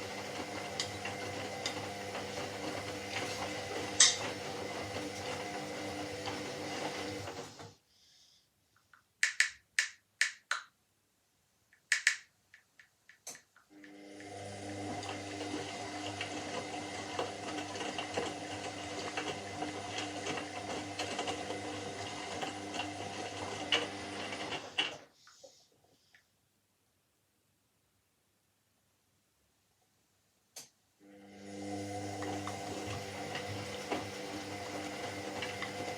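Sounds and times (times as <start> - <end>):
washing machine drum humming: 0.0 - 7.6, 31.4 - 35.9
washing machine clicks: 4.0 - 4.2.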